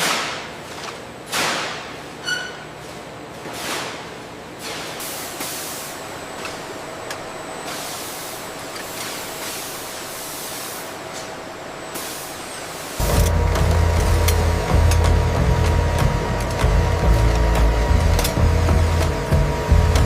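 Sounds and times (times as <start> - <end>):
hissing factory machinery: 0.0 - 20.0
faint hum: 5.3 - 20.0
loud low rumble: 13.0 - 20.0.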